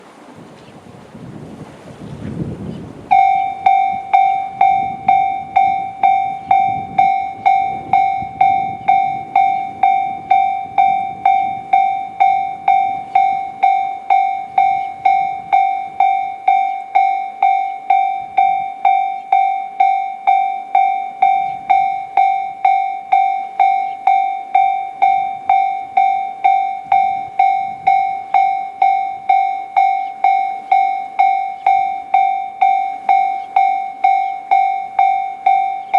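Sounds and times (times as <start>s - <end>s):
wind on microphone: 0.0s - 35.9s
level crossing alarm bell: 3.1s - 35.9s.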